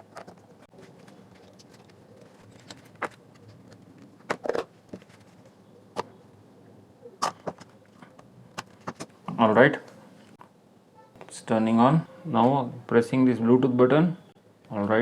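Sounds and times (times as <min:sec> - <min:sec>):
clicks and knocks handling speaker parts: 0:00.0 - 0:06.1, 0:07.2 - 0:09.2.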